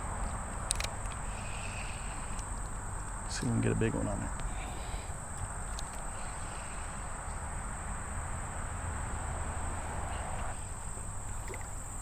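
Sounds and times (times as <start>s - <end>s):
insect chorus drone: 0.0s - 12.0s
creek water rushing: 7.9s - 12.0s.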